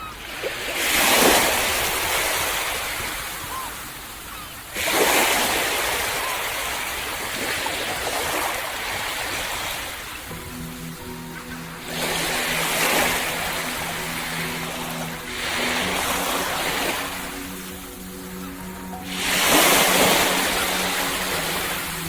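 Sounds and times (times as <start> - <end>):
wash of surf: 0.0 - 22.0
waves crashing: 0.0 - 22.0.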